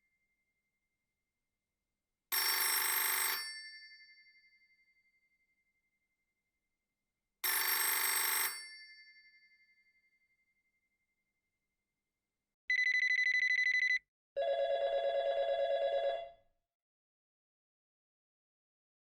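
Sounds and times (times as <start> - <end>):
telephone bell ringing: 2.4 - 3.6, 7.5 - 8.8, 12.7 - 16.4.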